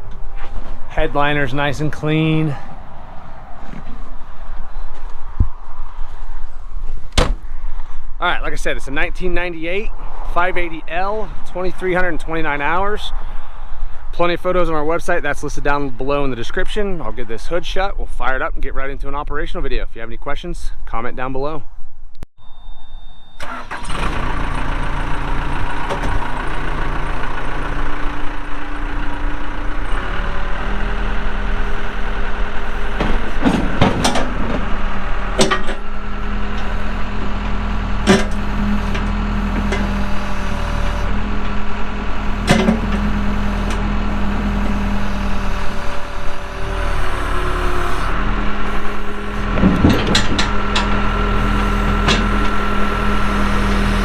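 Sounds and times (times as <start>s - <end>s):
diesel engine running: 0.0s - 6.9s, 23.4s - 54.0s
sharp clunks: 7.0s - 7.5s, 32.8s - 41.6s, 42.3s - 45.2s, 49.4s - 52.6s.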